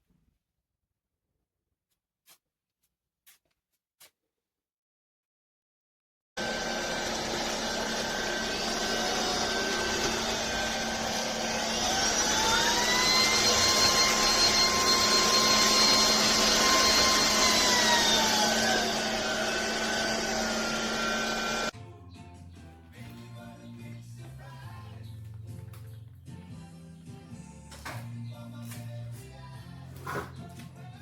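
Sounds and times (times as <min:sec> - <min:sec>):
stick vacuum motor whine: 0:06.4 - 0:21.7.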